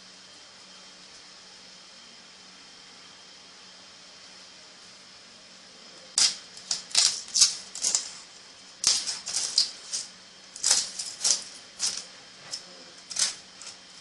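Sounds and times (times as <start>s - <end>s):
crab shell crackling and scraping: 6.2s - 13.9s.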